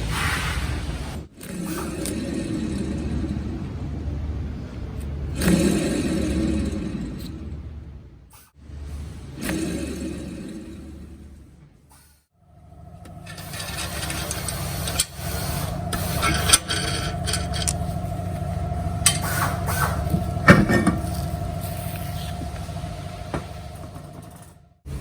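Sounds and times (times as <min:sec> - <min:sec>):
wavering whine: 0:12.4 - 0:24.1.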